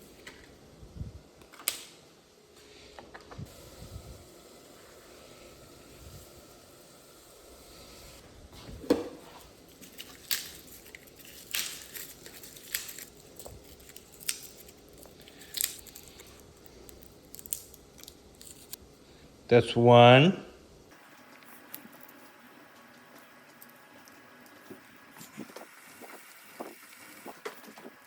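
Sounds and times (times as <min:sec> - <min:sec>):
faint steady hiss: 0:00.0 - 0:08.5.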